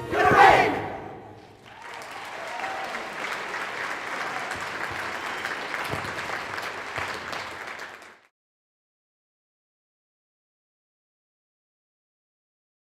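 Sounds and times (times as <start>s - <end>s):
audience applauding: 1.5s - 8.3s.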